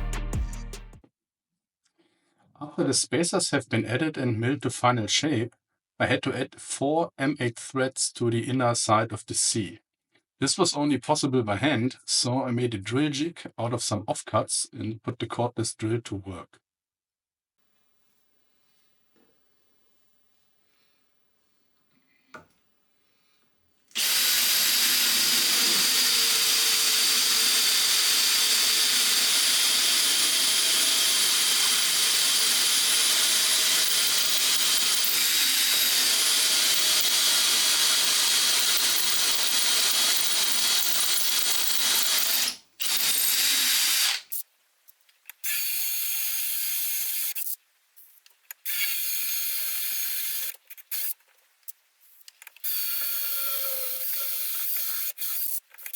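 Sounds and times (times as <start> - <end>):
cordless drill boring aluminium: 23.9 - 44.4, 45.4 - 47.5, 48.6 - 51.2, 52.6 - 55.9.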